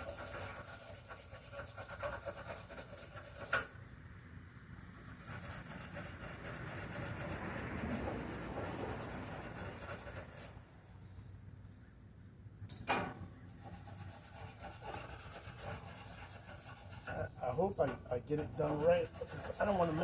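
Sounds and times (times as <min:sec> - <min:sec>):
metal bar being scrubbed: 0:00.0 - 0:03.7, 0:05.0 - 0:10.6, 0:13.4 - 0:17.3, 0:18.3 - 0:20.0.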